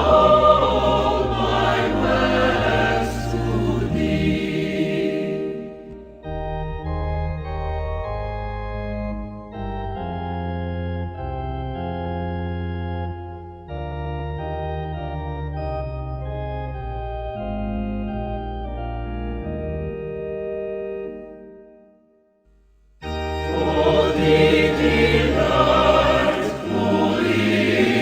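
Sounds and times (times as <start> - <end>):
organ playing a hymn: 0.0 - 22.0, 23.0 - 28.0.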